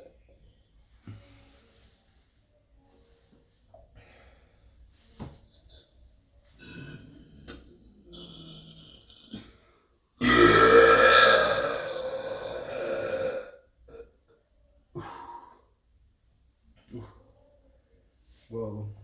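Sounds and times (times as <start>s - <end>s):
long loud burp: 6.6s - 9.6s, 10.2s - 14.1s.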